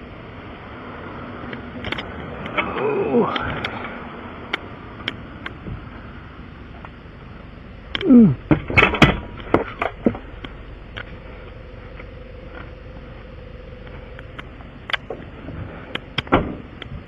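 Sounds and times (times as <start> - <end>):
steady background hum: 0.0 - 17.0
sharp knocks and clanks: 8.4 - 10.2, 15.9 - 17.0.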